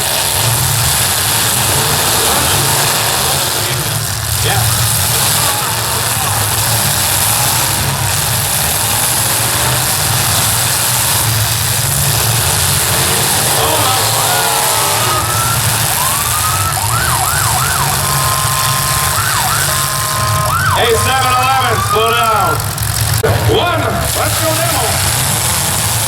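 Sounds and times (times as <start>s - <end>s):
car engines rumbling: 0.0s - 26.0s
crowd noise: 0.0s - 26.0s
siren wailing: 13.2s - 22.8s.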